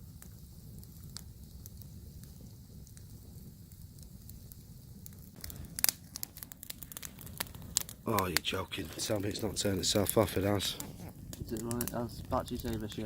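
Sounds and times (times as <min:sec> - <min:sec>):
campfire crackling and popping: 0:00.0 - 0:13.0
low fire rumble: 0:00.0 - 0:13.0.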